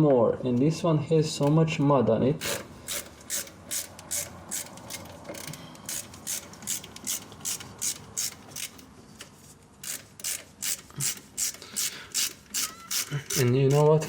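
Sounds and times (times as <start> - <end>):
ratchet wrench clicking: 2.4 - 8.8, 9.8 - 14.0.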